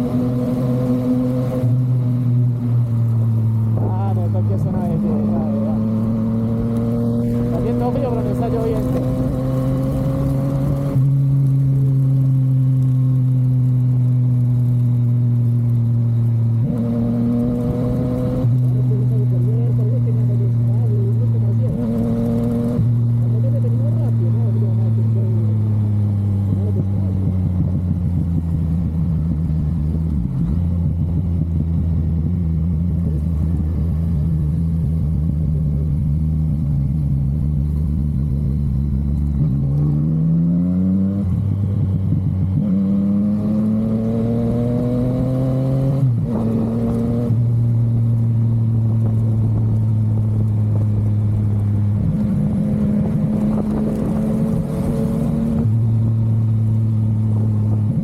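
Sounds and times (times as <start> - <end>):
motorcycle engine accelerating: 0.0 - 58.0.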